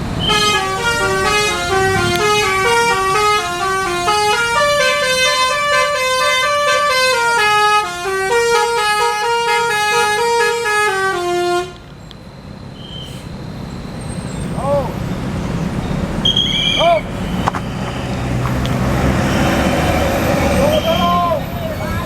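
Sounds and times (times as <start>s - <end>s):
multi-tone bus horn melody: 0.0s - 11.9s.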